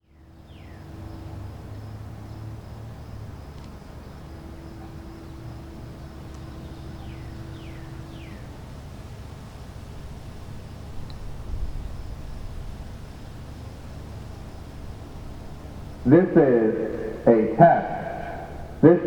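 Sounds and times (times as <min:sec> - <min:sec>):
faint high whine: 0:14.2 - 0:19.0
steady low rumble: 0:14.7 - 0:19.0.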